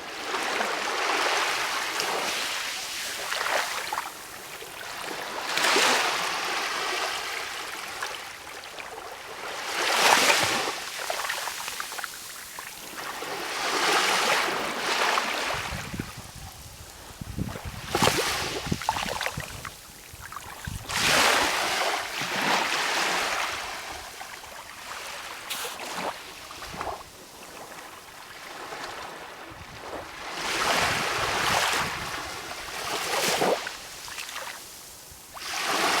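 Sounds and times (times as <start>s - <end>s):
calm sea waves washing in: 0.0s - 36.0s.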